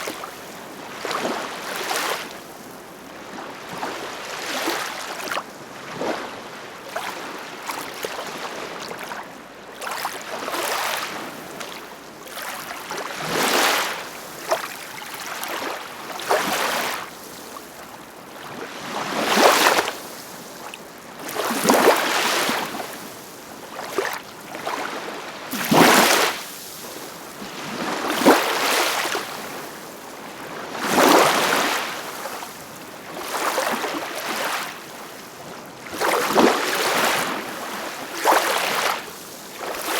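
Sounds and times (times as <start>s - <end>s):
ocean waves breaking: 21.2s - 39.9s.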